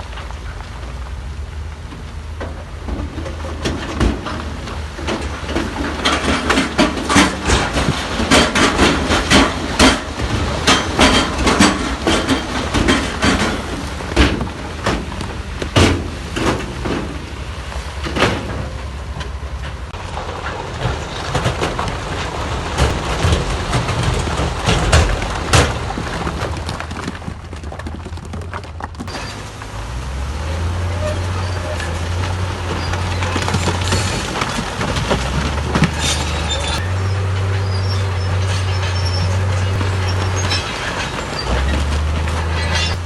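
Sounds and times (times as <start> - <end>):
stone and steel clattering: 3.1 - 15.2, 30.8 - 43.0
diesel engine running: 28.6 - 43.0.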